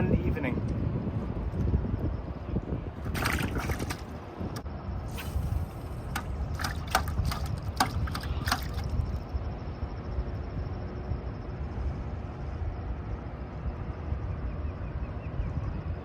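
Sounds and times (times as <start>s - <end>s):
wind rumble on microphone: 0.0s - 16.0s
water splashing at river's edge: 3.0s - 4.3s, 5.1s - 9.2s.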